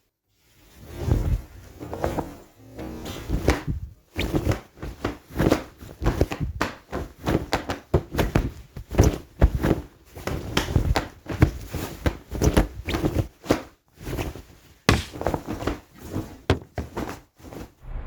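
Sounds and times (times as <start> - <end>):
cloth snapping and swishing: 7.3 - 13.6, 14.9 - 17.2
punches and blocks landing: 14.9 - 15.5.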